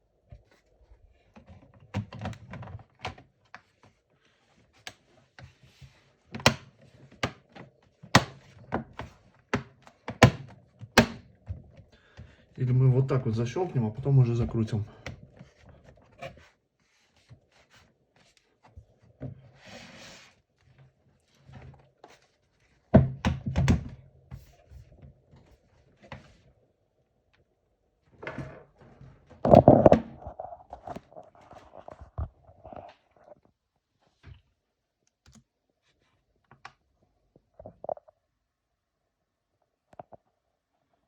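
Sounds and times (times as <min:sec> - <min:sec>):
laptop cover snapping into place: 0:08.2 - 0:08.4, 0:09.6 - 0:11.2.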